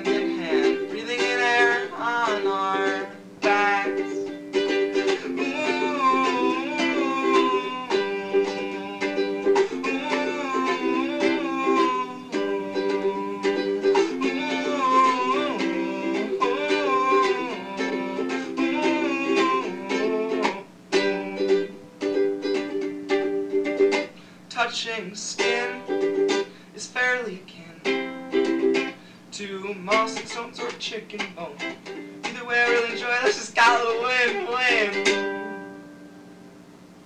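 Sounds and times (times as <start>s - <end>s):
strummed acoustic string instrument: 0.0s - 36.6s.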